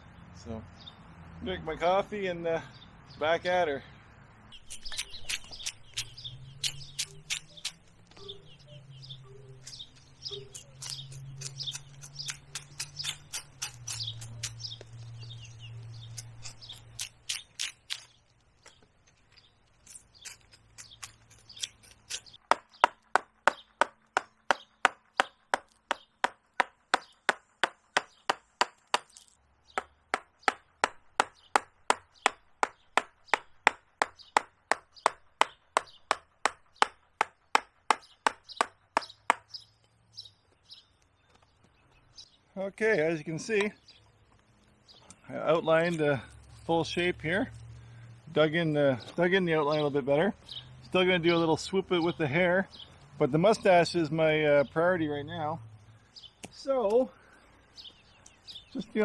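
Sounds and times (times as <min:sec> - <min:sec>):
mallet striking carving gouge: 0:22.1 - 0:39.5.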